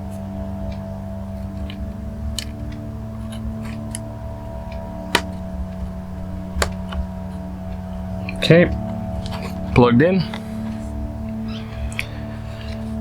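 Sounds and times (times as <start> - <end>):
steady hum: 0.0 - 13.0.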